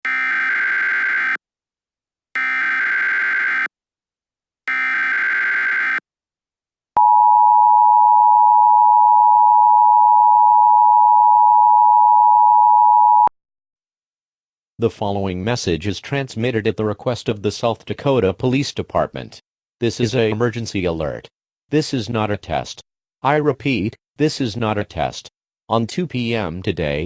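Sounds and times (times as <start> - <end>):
warbling data tones: 0.1 - 1.4, 2.4 - 3.7, 4.7 - 6.0.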